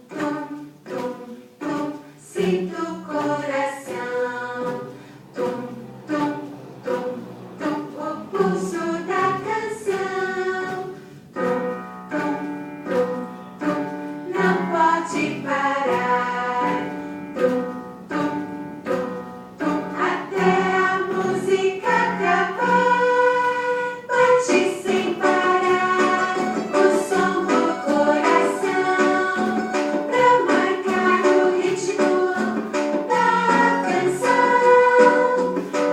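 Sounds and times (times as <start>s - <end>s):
mixed choir singing in harmony: 0.0s - 35.9s
strummed accompaniment: 0.0s - 35.9s.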